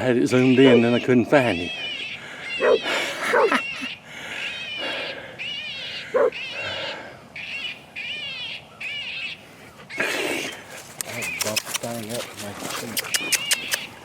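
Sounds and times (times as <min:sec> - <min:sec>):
animal distress cries: 0:00.0 - 0:14.0
sharp lower yelps: 0:00.3 - 0:10.1.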